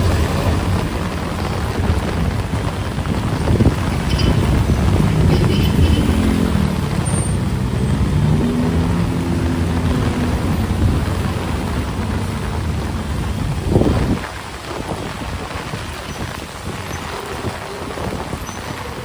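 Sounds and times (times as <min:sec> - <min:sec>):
vehicle engine running: 0:00.0 - 0:14.3
heavy rain hissing: 0:00.0 - 0:19.0.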